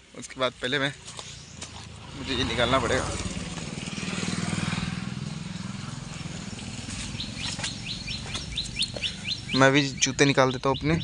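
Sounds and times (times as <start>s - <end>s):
vehicle engine passing: 1.2s - 11.0s
bird chirping: 5.3s - 11.0s.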